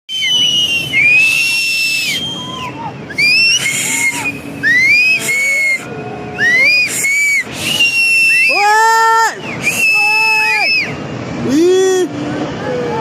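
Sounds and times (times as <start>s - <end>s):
people crying out shrilly: 0.4s - 13.0s
people shouting: 8.3s - 10.8s.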